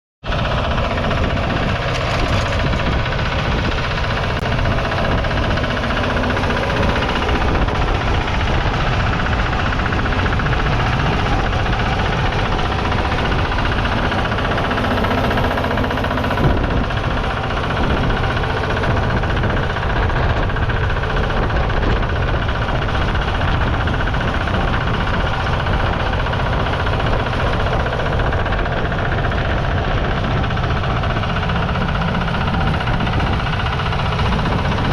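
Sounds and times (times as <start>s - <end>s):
diesel engine knocking: 0.2s - 34.9s.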